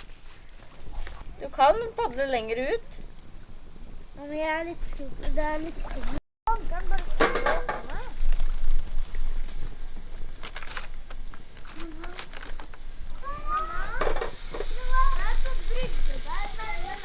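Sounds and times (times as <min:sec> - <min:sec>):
food sizzling in frying pan: 0:07.2 - 0:17.0.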